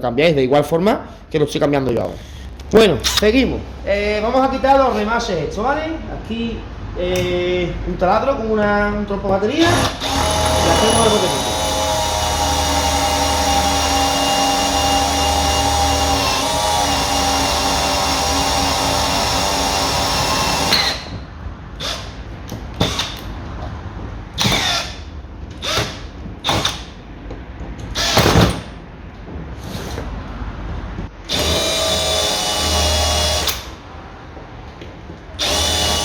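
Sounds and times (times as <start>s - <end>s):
cordless drill whining: 9.6s - 21.1s, 24.4s - 25.0s, 27.9s - 28.4s, 31.3s - 33.7s, 35.4s - 36.0s.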